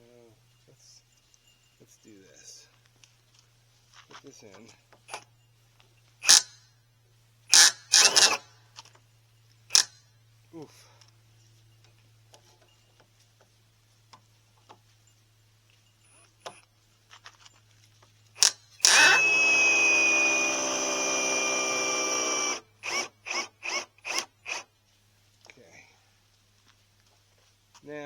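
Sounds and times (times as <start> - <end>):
power drill driving screw: 6.2 - 6.5, 7.5 - 8.5, 18.4 - 24.7.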